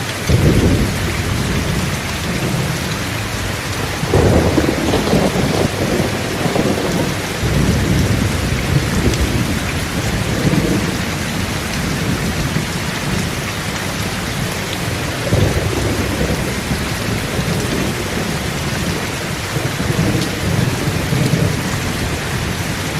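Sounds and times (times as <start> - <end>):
heavy rain falling: 0.0 - 22.9.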